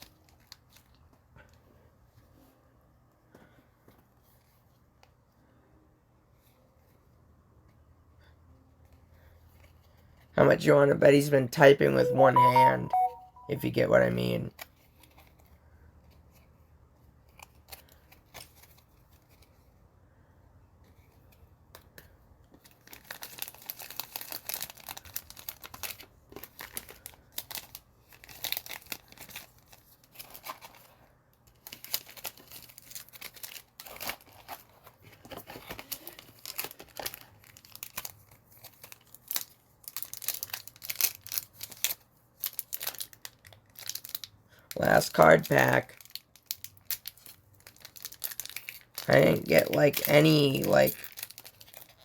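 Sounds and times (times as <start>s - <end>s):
wrapper tearing and crinkling: 17.3s - 19.6s, 22.6s - 52.0s.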